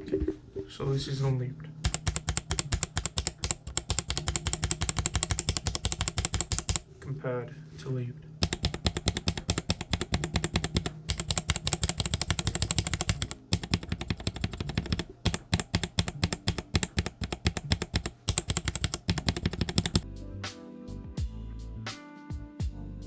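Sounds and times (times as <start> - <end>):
mechanical keyboard keystroke clacks: 1.8 - 6.8, 8.4 - 20.0.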